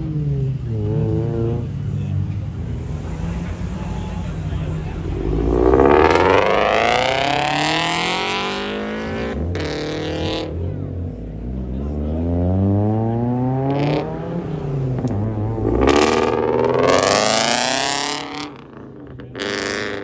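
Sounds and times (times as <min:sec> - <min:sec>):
steady low engine note: 0:00.0 - 0:20.0
car engine revving hard: 0:02.8 - 0:10.7, 0:11.6 - 0:20.0.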